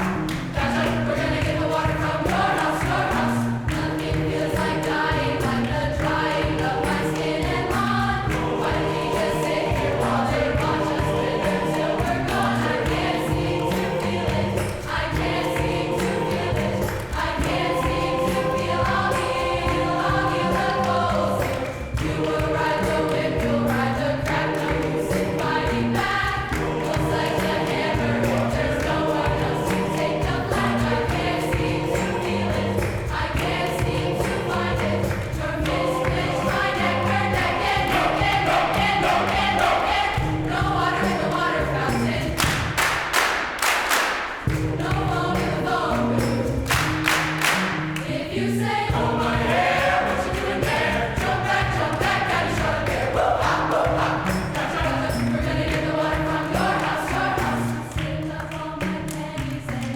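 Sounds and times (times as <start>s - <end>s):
sharp percussive hits: 0.0s - 48.0s
choir singing in parts: 0.0s - 59.9s.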